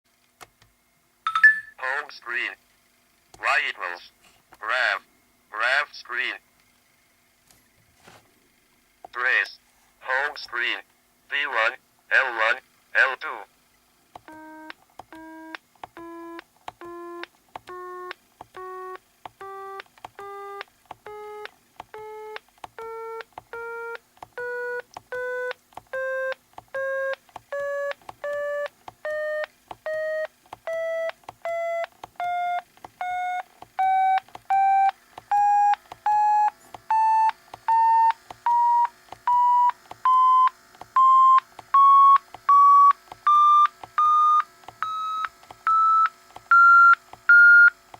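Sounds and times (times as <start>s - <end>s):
calculator beeps rising in pitch: 1.3s - 1.8s, 14.3s - 47.8s.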